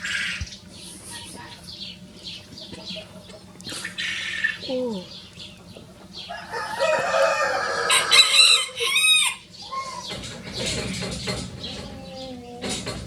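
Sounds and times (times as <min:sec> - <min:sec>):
rooster crowing: 0:06.3 - 0:10.1.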